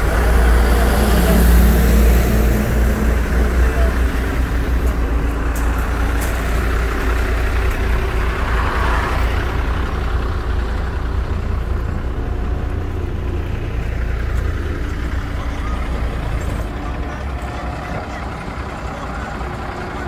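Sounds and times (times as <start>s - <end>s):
diesel truck engine rumbling: 0.0s - 20.0s.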